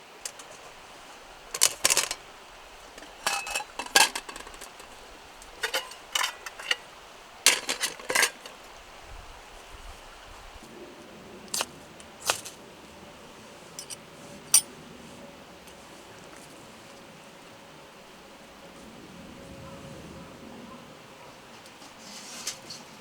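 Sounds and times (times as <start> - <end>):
metal cookware clinking: 0.2 - 0.8, 1.5 - 2.2, 2.9 - 6.9, 7.5 - 8.6, 13.8 - 14.7.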